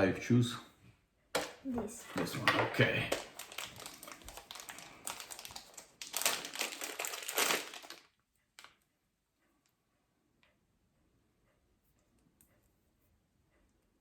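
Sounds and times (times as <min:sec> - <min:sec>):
plastic packaging crinkling: 0:03.0 - 0:08.8.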